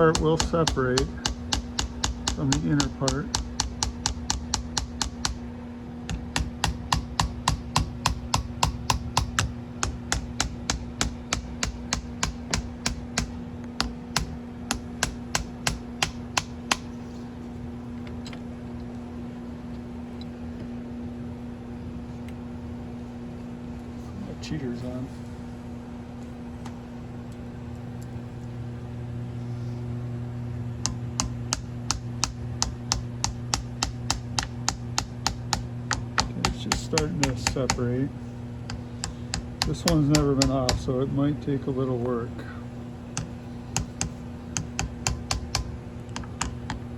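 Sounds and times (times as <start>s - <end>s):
ratchet clicking: 0.0s - 5.4s
sharp even taps: 0.0s - 5.4s, 30.8s - 37.8s, 38.7s - 40.9s, 43.2s - 46.8s
low hum: 0.0s - 46.9s.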